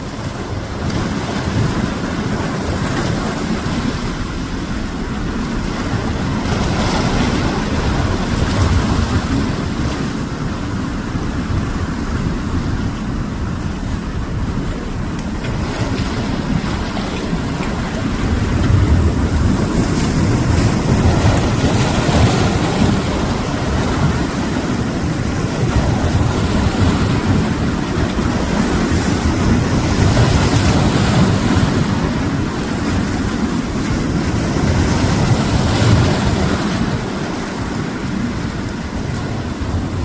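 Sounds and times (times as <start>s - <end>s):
surf washing over rocks: 0.0s - 40.0s
wind rumbling on microphone: 0.0s - 40.0s.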